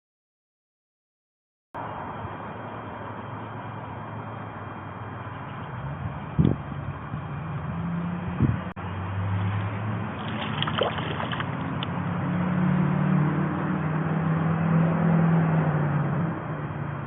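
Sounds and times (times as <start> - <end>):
small water splashes: 10.1 - 11.9
water sloshing against kayak: 10.2 - 11.8.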